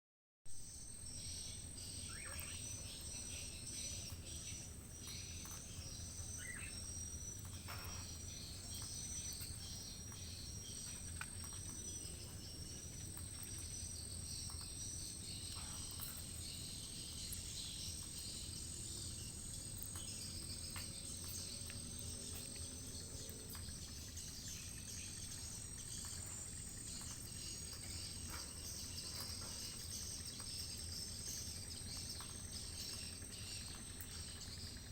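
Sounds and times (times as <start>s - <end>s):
high-pitched insect drone: 0.6s - 34.9s
short high insect chirps: 0.7s - 4.4s
bird calls: 1.1s - 34.9s.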